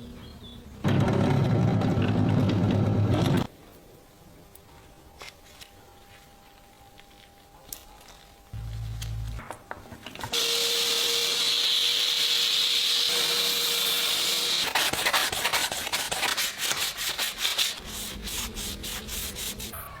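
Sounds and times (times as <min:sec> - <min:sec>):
faint hum: 0:02.8 - 0:10.0
sanding hiss: 0:10.4 - 0:19.8
rubbing strokes on knife: 0:14.7 - 0:19.8.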